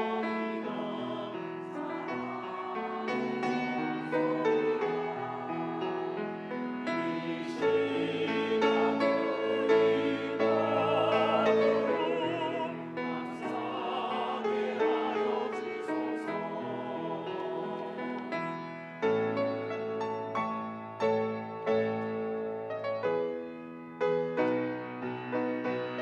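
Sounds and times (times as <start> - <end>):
choir singing with vibrato: 0.0 - 19.0
piano accompaniment: 0.0 - 26.0.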